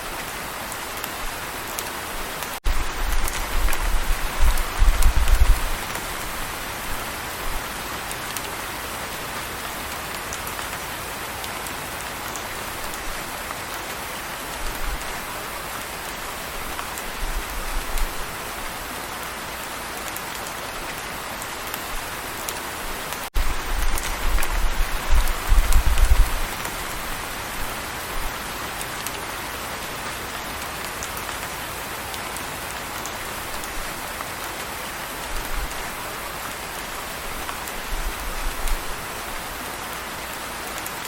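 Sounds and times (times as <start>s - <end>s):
steady rain: 0.0s - 41.0s.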